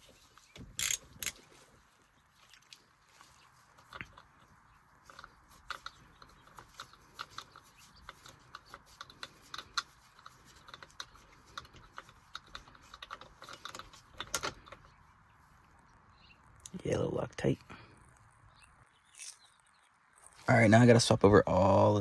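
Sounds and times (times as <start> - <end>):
ratchet wrench clicking: 0.7 - 1.4.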